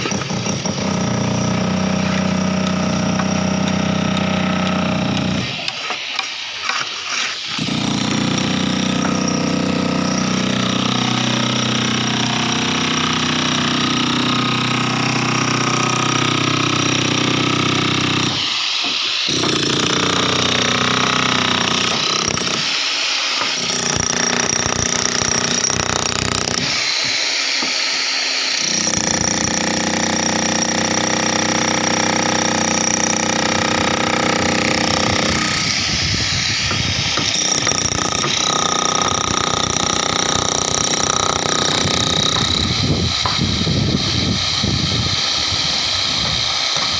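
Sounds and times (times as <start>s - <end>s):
power tool cutting concrete: 0.0s - 46.9s.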